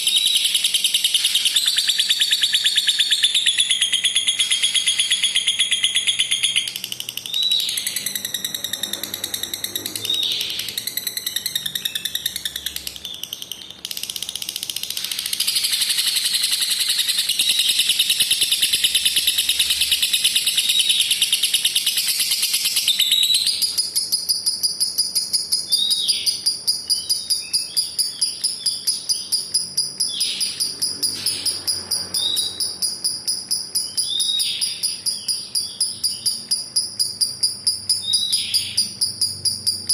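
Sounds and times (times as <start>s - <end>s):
bird chattering trill: 0.0s - 39.9s
bird chirps dropping in pitch: 33.8s - 36.6s, 37.9s - 39.9s.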